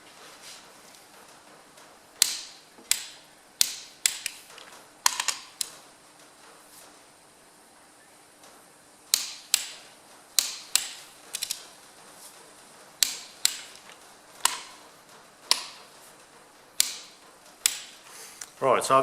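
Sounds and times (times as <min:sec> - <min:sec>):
metallic tool clicks and knocks: 0:16.8 - 0:18.0.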